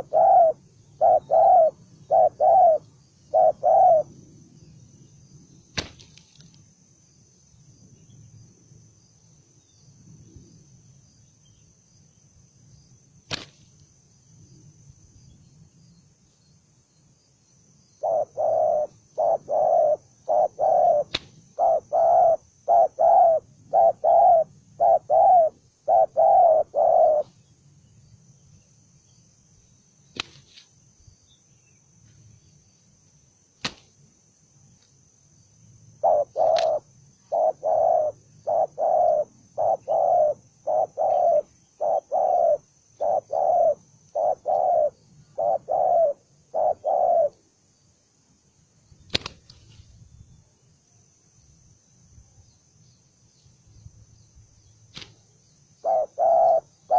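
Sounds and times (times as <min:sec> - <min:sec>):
dove cooing: 0:00.0 - 0:04.2, 0:18.0 - 0:27.3, 0:36.0 - 0:47.4, 0:55.8 - 0:56.9.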